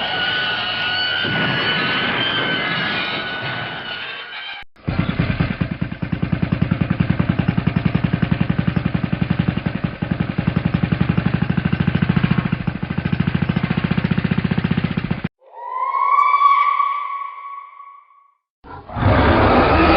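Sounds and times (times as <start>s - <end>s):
boat engine running: 4.8s - 15.3s.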